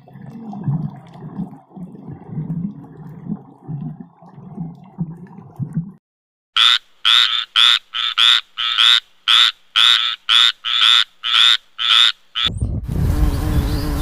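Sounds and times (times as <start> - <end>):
frog croaking: 6.6 - 12.5.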